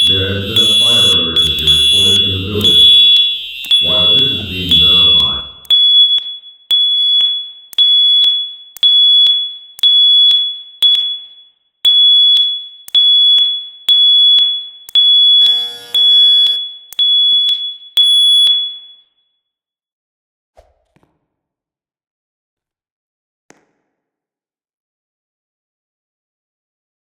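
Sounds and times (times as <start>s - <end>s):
fire alarm beeping: 0.0s - 19.2s.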